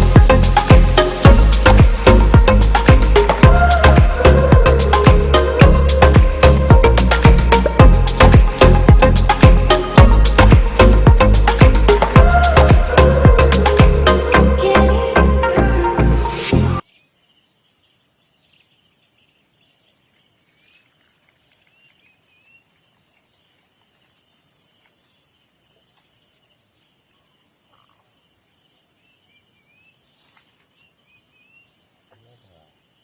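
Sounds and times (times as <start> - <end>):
dance music: 0.0 - 16.8
insects chorus: 16.9 - 33.0.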